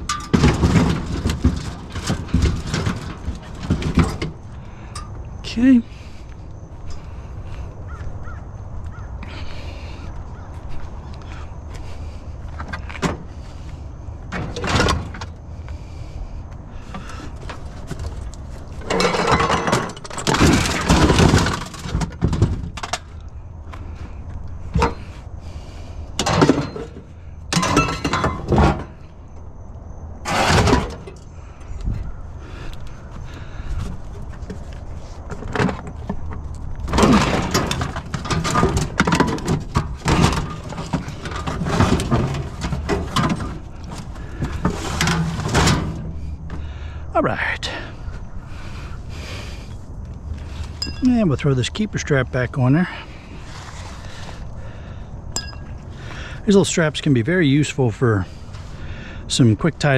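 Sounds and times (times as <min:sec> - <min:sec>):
scrap clattering and banging: 0:00.0 - 0:05.2, 0:14.3 - 0:15.4, 0:16.8 - 0:23.2, 0:24.6 - 0:29.1, 0:30.2 - 0:31.3, 0:33.4 - 0:46.9.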